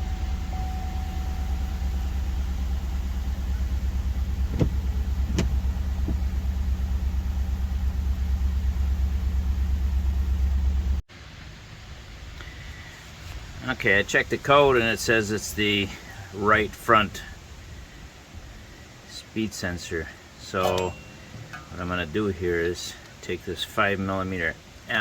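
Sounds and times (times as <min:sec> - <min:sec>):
car engine rumbling: 0:00.0 - 0:25.0.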